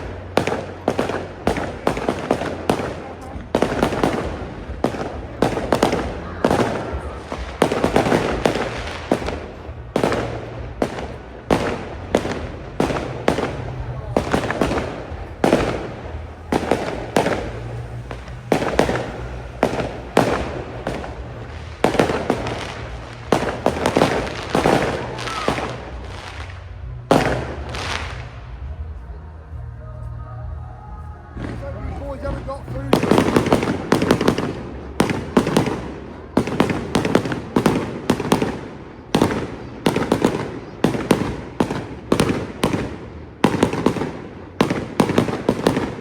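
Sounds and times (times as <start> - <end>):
fireworks exploding: 0.0 - 29.8, 31.3 - 46.0.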